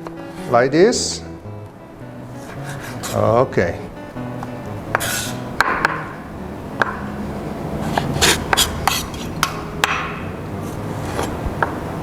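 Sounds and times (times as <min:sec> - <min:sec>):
knife scraping swishes: 0:02.3 - 0:03.3, 0:04.9 - 0:05.4, 0:07.7 - 0:09.4
knife tapping on cutting board: 0:04.4 - 0:06.2, 0:06.8 - 0:07.1.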